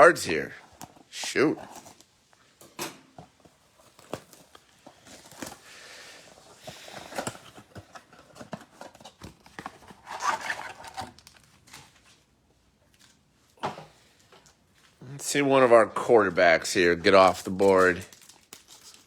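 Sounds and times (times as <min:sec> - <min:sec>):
packaging torn and crinkled: 0:10.0 - 0:11.9, 0:17.2 - 0:19.0.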